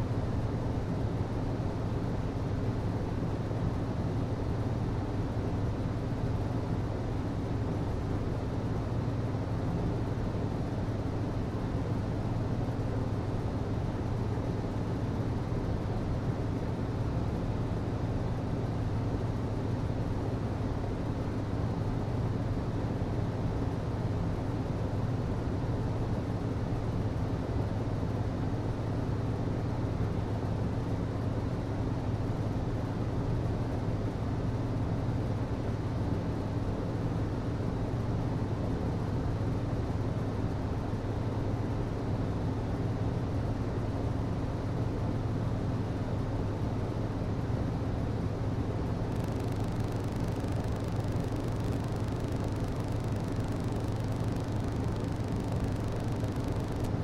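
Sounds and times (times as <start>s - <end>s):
low hum: 48.8s - 57.0s.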